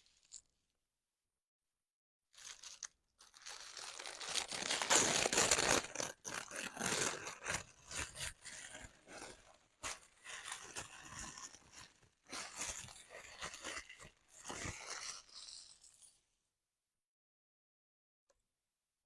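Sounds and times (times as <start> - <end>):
paper crinkling and tearing: 2.4 - 16.0.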